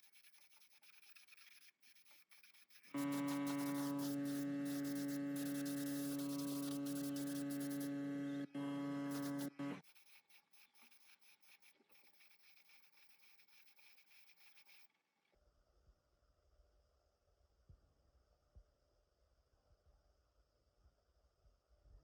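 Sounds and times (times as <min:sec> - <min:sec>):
electrical hum: 0:03.0 - 0:09.8.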